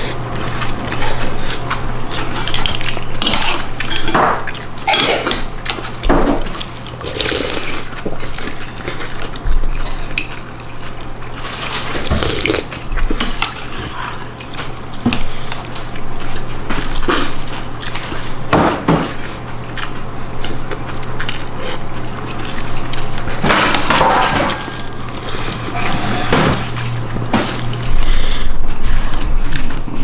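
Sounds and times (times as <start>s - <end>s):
steady low hum: 0.0s - 30.0s
liquid sounds: 19.3s - 30.0s.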